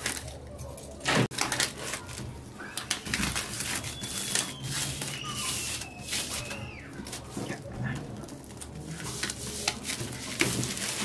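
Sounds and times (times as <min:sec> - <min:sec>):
thin high whistle: 0:03.6 - 0:07.0.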